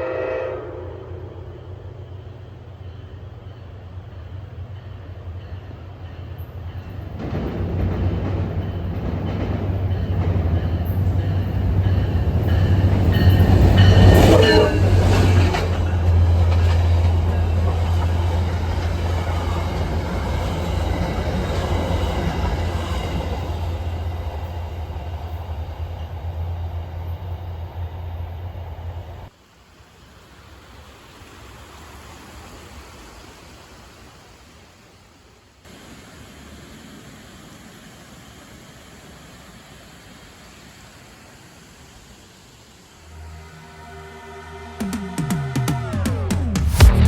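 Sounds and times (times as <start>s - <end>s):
diesel locomotive drone: 0.0s - 29.3s, 40.1s - 47.0s
train wheels on rails: 0.0s - 29.3s.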